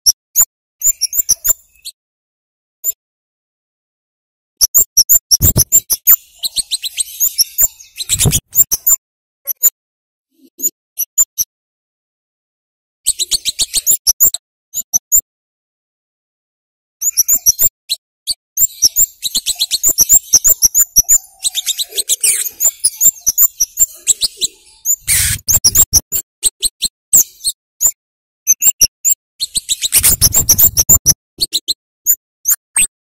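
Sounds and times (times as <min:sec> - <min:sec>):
bird chirping: 0:00.4 - 0:02.0, 0:04.6 - 0:09.7, 0:13.1 - 0:15.2, 0:17.0 - 0:32.9.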